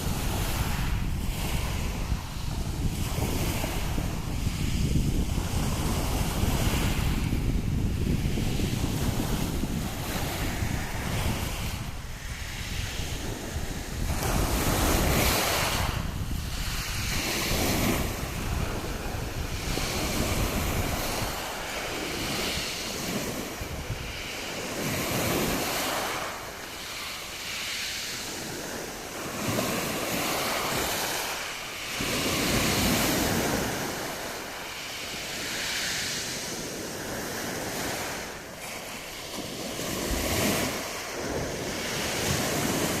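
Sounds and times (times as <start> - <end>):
sea waves washing onto shore: 0.0 - 43.0
wind buffeting microphone: 0.0 - 43.0.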